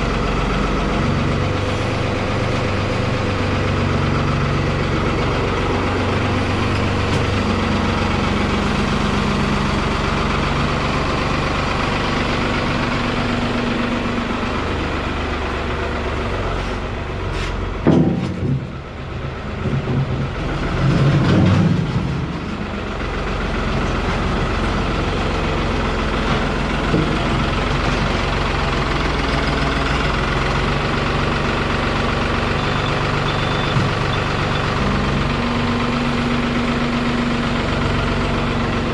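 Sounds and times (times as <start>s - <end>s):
low engine surge: 0.0s - 38.9s
tractor engine running: 0.0s - 38.9s
sharp clunk: 17.8s - 18.7s.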